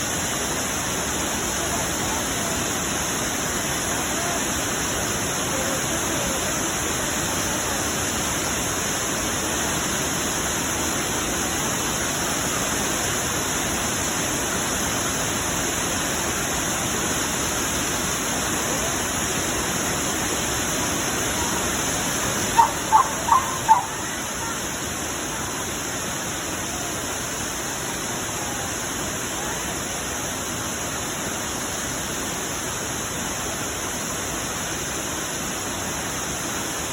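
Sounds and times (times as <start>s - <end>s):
waterfall rushing: 0.0s - 36.9s
high-pitched chirps: 22.6s - 24.6s.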